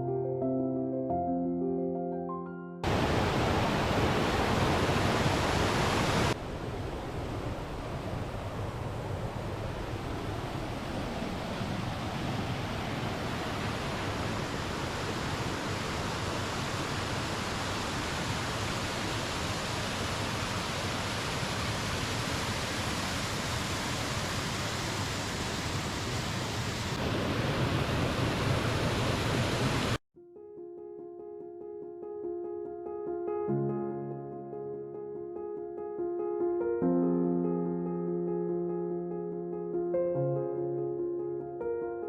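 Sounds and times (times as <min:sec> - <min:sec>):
waterfall roaring: 0:02.8 - 0:30.0.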